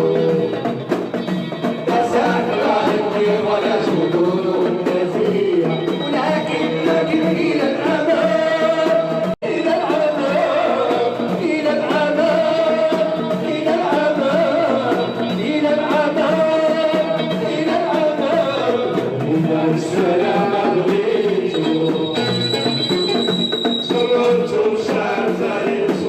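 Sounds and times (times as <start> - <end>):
person singing: 0.0 - 22.4, 23.9 - 26.0
instrumental accompaniment: 0.0 - 26.0.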